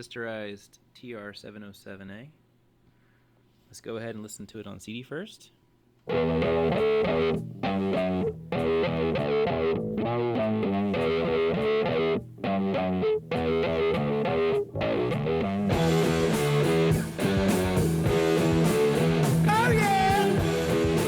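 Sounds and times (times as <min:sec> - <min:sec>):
guitar-led music: 0:06.0 - 0:21.0.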